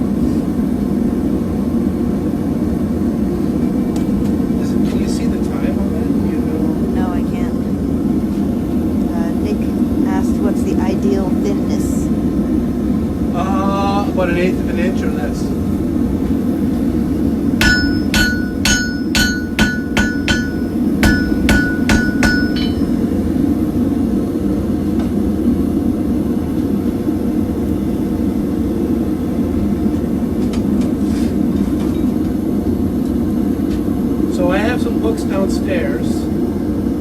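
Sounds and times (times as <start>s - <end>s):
gas forge burner: 0.0s - 37.0s
hammer on ringing anvil: 17.6s - 23.0s.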